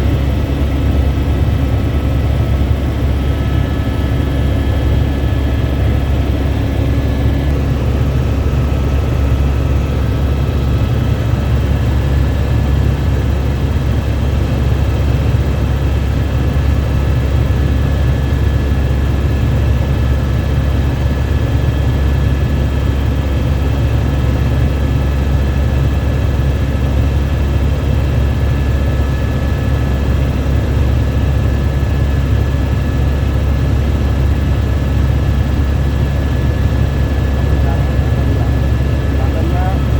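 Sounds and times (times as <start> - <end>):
helicopter rotor and engine drone: 0.0 - 39.9
high turbine whine: 30.3 - 39.9.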